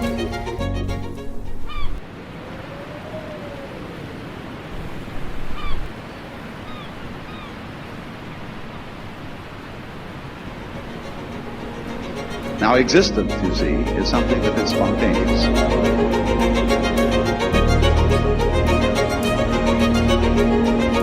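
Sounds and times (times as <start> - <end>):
surf washing on shore: 1.7 - 21.0.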